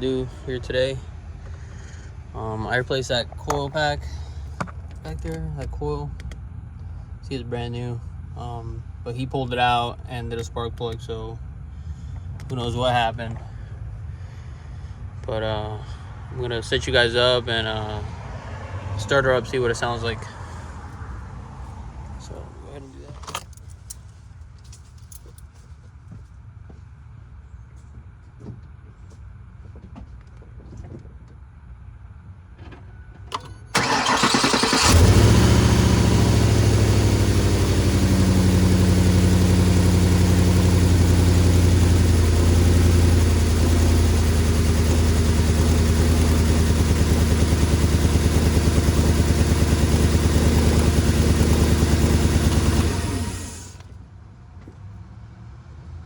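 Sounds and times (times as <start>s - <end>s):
car engine idling with misfire: 33.8s - 53.8s
starter motor cranking: 33.8s - 53.9s.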